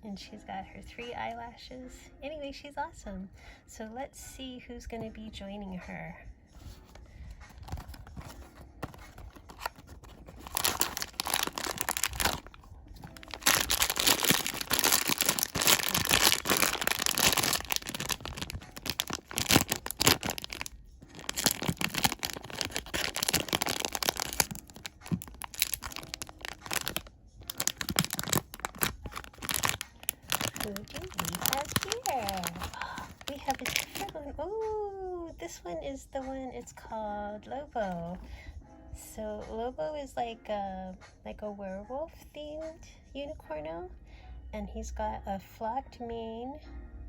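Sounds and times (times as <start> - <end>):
cardboard packaging ripping: 7.5 - 34.1.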